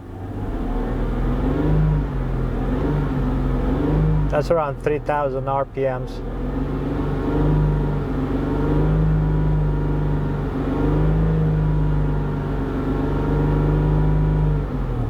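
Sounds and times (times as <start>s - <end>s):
car engine exhaust note: 0.0s - 15.0s.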